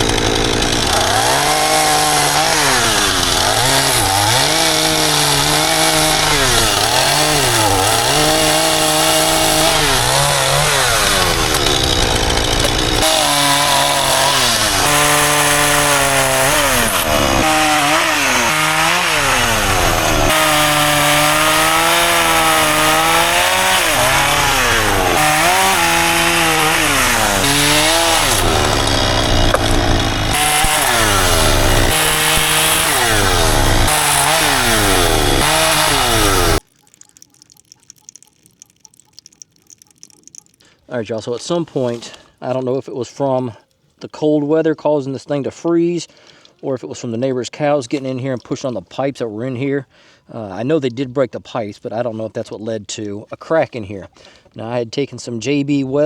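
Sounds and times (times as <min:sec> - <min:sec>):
chainsaw engine revving: 0:00.0 - 0:36.6.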